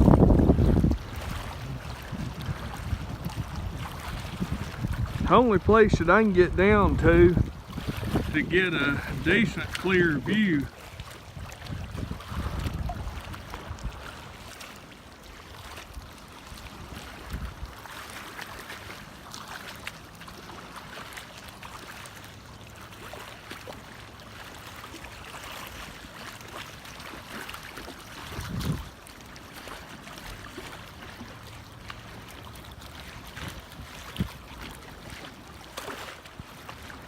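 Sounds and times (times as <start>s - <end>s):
wind buffeting microphone: 0.0s - 14.3s, 16.6s - 17.8s, 28.2s - 29.0s, 33.2s - 34.8s
lake water lapping at shore: 0.0s - 37.0s.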